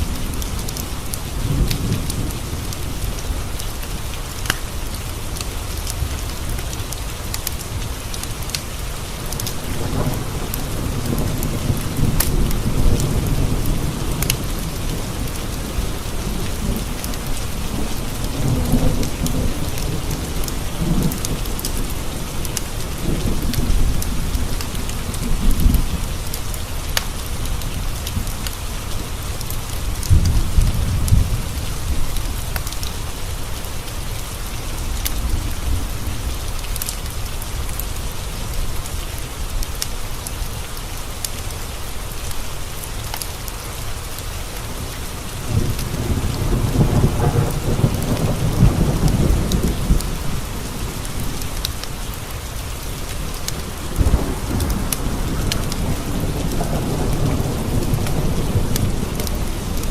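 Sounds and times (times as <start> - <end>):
steady rain: 0.0 - 59.9
rolling thunder: 9.2 - 26.3, 29.8 - 32.7, 45.3 - 52.1, 52.8 - 59.9.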